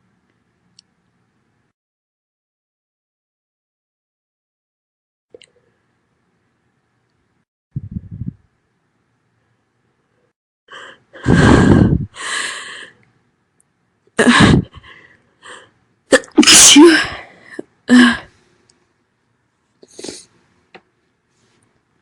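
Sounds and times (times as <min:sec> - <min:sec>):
woman sneezing loudly: 0:16.1 - 0:17.2.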